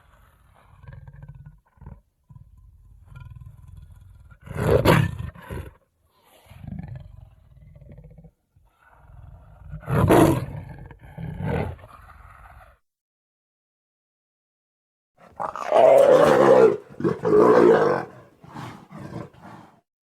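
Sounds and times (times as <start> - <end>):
big cat roars: 0.0 - 12.8, 15.2 - 19.8
low growls: 15.2 - 19.8.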